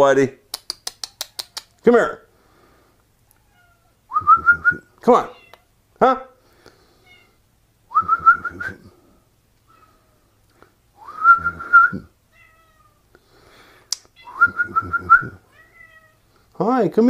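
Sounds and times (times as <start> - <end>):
person whistling: 11.0 - 12.1, 14.3 - 15.4.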